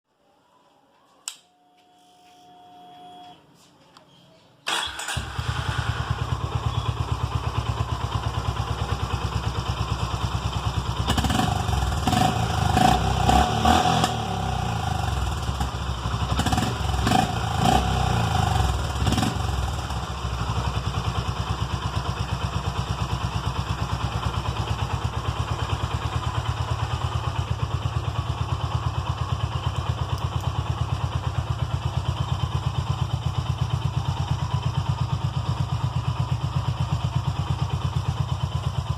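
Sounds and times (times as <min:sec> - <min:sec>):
motorcycle engine idling: 0:04.8 - 0:13.3, 0:14.1 - 0:38.9
engine revving: 0:11.0 - 0:20.0.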